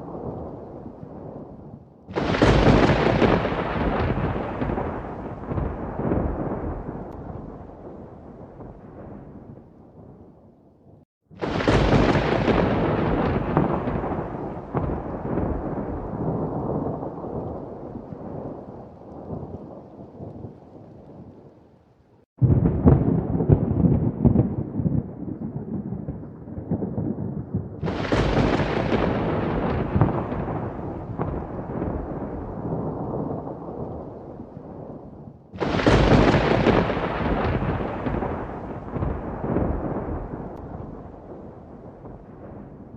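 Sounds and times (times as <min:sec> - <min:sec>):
thunder rumbling and clapping: 0:00.0 - 0:10.4, 0:11.4 - 0:21.5, 0:22.4 - 0:42.9.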